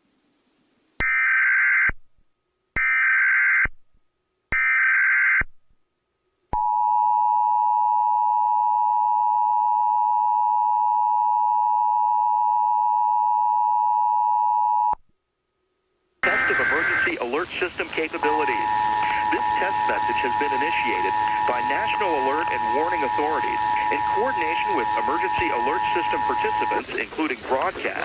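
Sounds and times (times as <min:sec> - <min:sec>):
steady two-tone alert signal: 0:16.2 - 0:27.0
digital header tone bursts: 0:16.2 - 0:28.0.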